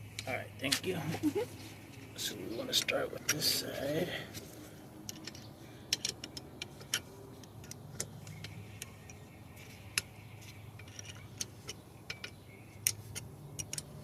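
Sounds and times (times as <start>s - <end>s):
wrench clicking on metal: 5.1s - 9.2s, 9.9s - 14.0s.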